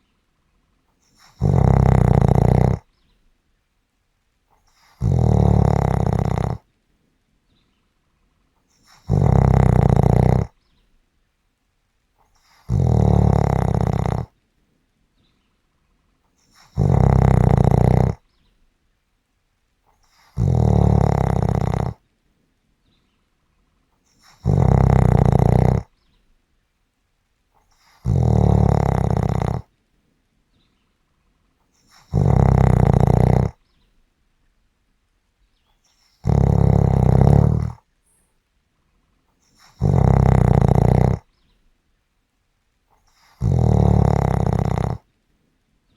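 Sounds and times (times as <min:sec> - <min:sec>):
quiet breaths: 0:00.0 - 0:45.9
person snoring: 0:01.2 - 0:02.8, 0:04.8 - 0:06.6, 0:08.9 - 0:10.6, 0:12.5 - 0:14.3, 0:16.6 - 0:18.2, 0:20.2 - 0:22.0, 0:24.2 - 0:25.9, 0:27.9 - 0:29.7, 0:31.9 - 0:33.6, 0:36.2 - 0:37.8, 0:39.6 - 0:41.3, 0:43.2 - 0:45.0.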